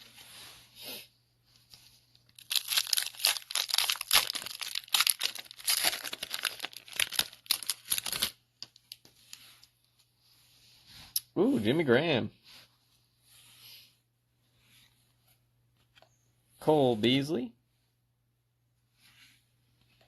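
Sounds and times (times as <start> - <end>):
plastic wrapper tearing and crinkling: 2.3 - 9.0.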